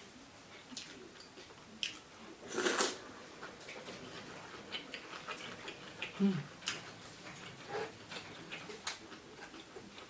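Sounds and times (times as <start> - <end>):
chewing: 2.6 - 10.0.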